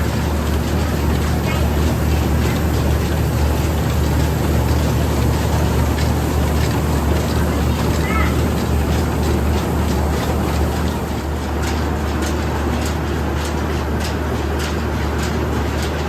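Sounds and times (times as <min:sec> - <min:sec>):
heavy machinery engine droning: 0:00.0 - 0:12.2.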